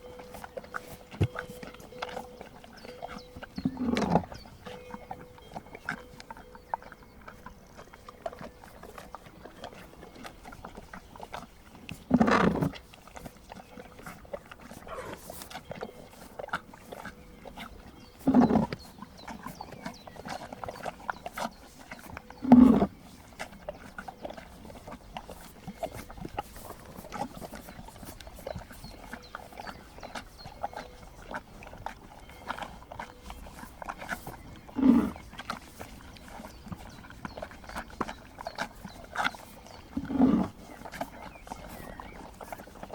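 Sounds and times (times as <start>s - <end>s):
horse snorts: 3.6s - 4.4s, 12.0s - 12.8s, 14.6s - 15.6s, 18.2s - 18.8s, 22.4s - 23.0s, 33.8s - 38.2s, 39.1s - 42.9s.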